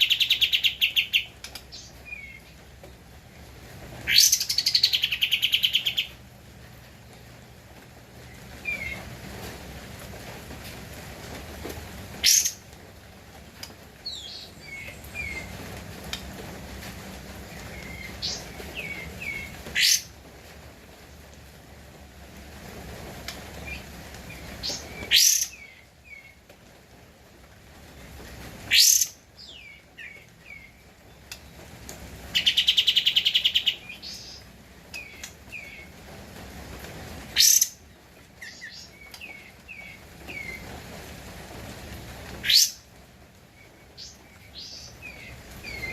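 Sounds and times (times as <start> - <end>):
bird chirps: 4.1 - 6.2.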